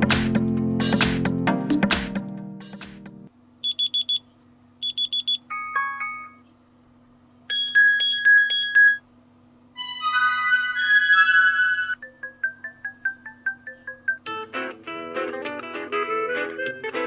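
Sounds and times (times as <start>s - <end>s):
phone speaker alarm tones: 7.5s - 9.0s.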